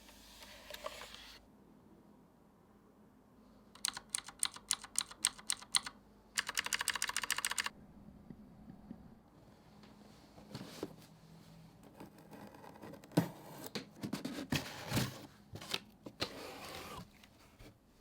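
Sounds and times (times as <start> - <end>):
mechanical keyboard typing: 3.8 - 7.7.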